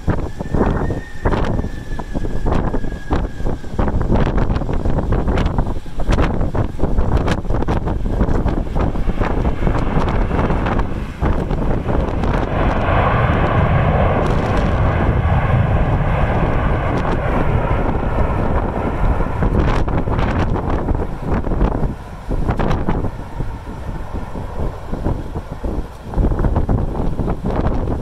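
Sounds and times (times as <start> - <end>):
jet aircraft passing: 0.0 - 28.0
wind buffeting microphone: 0.0 - 28.0.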